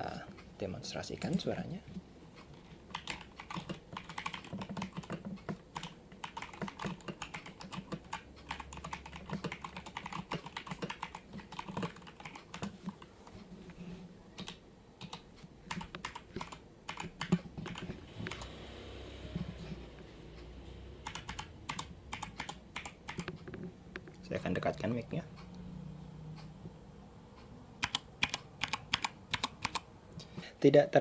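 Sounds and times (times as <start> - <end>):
mechanical keyboard typing: 2.9 - 13.1, 14.4 - 18.6, 21.0 - 25.0, 27.8 - 29.9.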